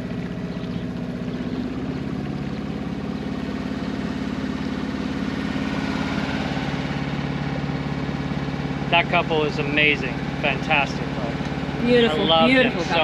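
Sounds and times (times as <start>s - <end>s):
boat engine running: 0.0s - 13.0s.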